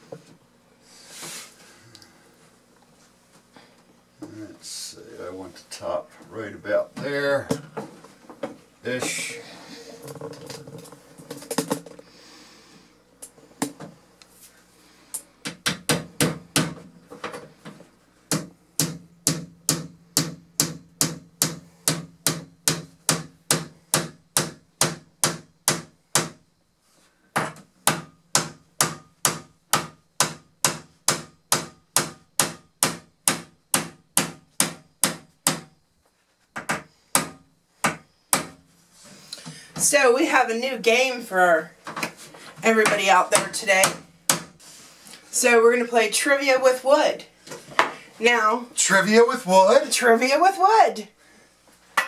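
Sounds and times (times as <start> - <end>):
hammer nailing wood: 15.5 - 16.8, 18.3 - 26.4, 27.4 - 35.8, 36.6 - 38.6, 42.8 - 44.6.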